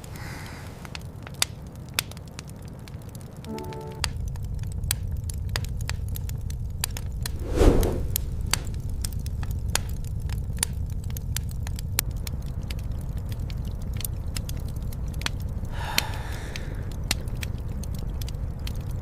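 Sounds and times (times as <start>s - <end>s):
wood fire crackling and popping: 0.0s - 19.0s
storm wind rumbling: 7.2s - 9.7s.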